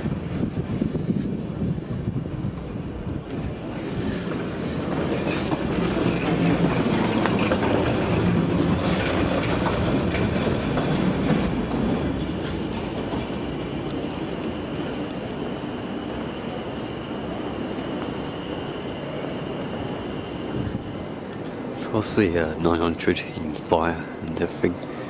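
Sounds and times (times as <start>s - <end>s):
rattling clicking clatter: 4.3s - 14.0s.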